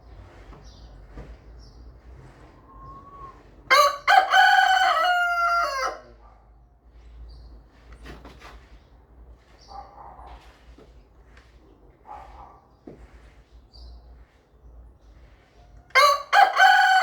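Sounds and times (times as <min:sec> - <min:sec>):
rooster crowing: 0:02.8 - 0:06.2, 0:15.9 - 0:17.0.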